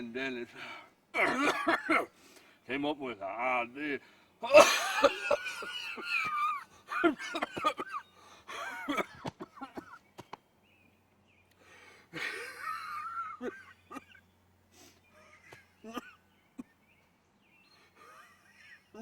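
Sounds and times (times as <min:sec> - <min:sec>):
man coughing: 0:01.2 - 0:02.1, 0:04.4 - 0:10.0, 0:15.5 - 0:16.7.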